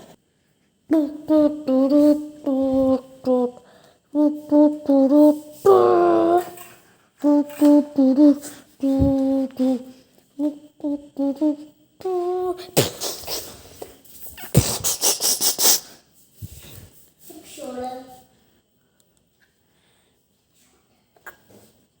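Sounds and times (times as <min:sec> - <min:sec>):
person humming: 0:00.9 - 0:16.9
hissing clicking mouth sounds: 0:12.6 - 0:16.0.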